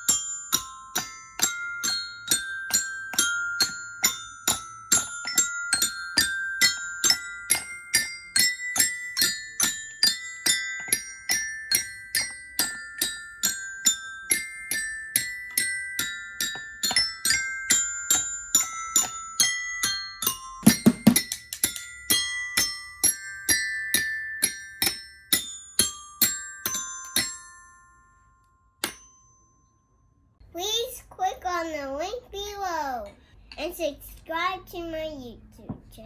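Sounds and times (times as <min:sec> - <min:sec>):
xylophone notes: 0:00.0 - 0:28.1.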